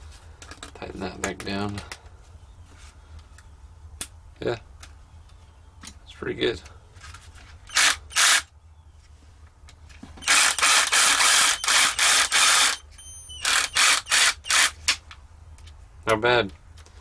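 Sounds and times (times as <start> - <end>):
mini chainsaw running: 7.7 - 8.4, 10.2 - 12.8, 13.4 - 14.8.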